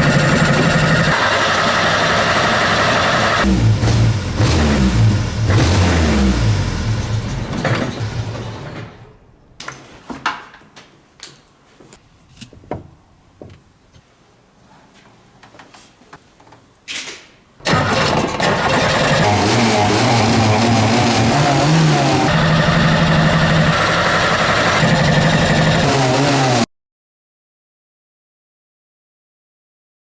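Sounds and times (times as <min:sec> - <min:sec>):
car engine revving: 0:00.0 - 0:08.3, 0:17.7 - 0:26.7.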